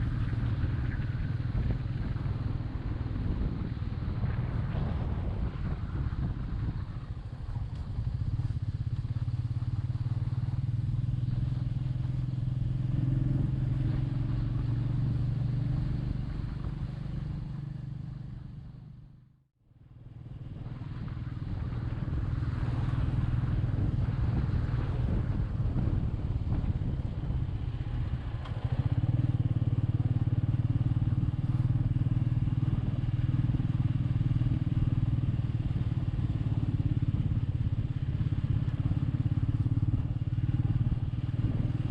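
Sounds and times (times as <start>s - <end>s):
motorcycle engine running: 0.0s - 41.9s.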